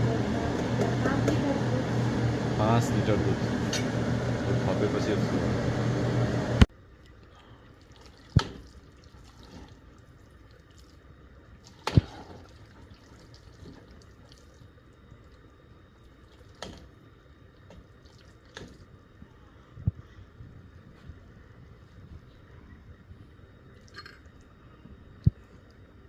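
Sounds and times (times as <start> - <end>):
thick mixture simmering in pot: 6.9 - 26.0.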